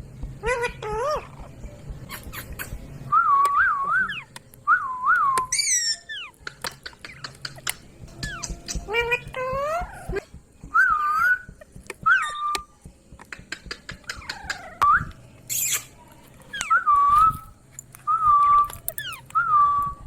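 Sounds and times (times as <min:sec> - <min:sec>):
parrot whistling: 0:02.1 - 0:12.7, 0:16.5 - 0:17.5
parrot clicks: 0:05.2 - 0:09.5.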